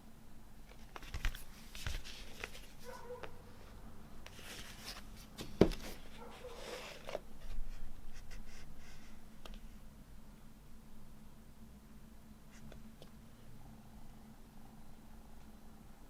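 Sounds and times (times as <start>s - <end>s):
hands handling record packaging: 0.7s - 7.6s.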